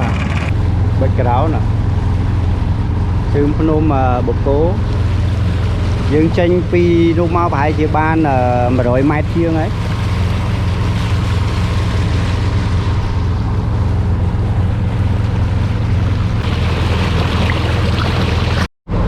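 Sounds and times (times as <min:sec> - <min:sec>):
motorboat engine running: 0:00.0 - 0:19.0
wind and water rushing: 0:00.0 - 0:19.0.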